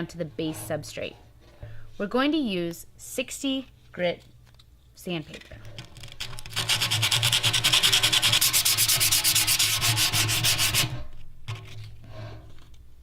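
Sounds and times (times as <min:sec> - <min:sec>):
sandpaper rubbing on metal: 0:06.5 - 0:11.0.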